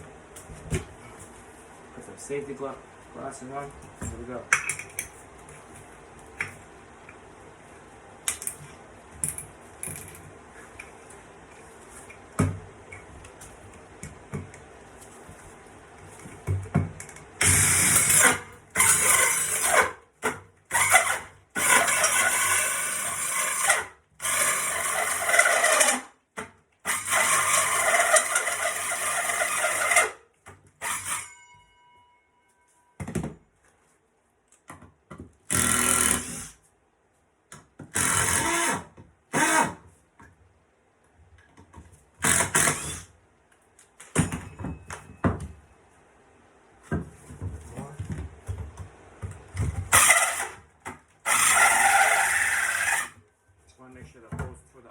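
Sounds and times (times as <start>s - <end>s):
power drill cutting into wood: 17.4s - 20.0s, 20.7s - 26.1s, 26.9s - 30.2s, 30.8s - 31.4s, 35.5s - 36.5s, 37.9s - 39.8s, 42.2s - 43.1s, 49.9s - 50.6s, 51.2s - 53.2s.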